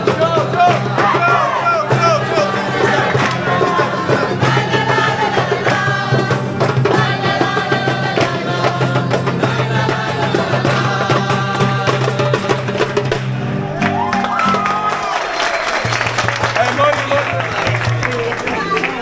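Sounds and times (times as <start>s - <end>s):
people singing: 0.0s - 13.8s
drum beat: 0.0s - 19.0s.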